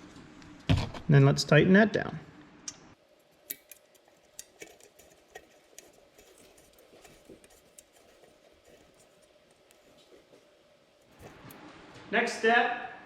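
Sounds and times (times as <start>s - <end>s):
hand tool clicking: 3.4s - 9.8s.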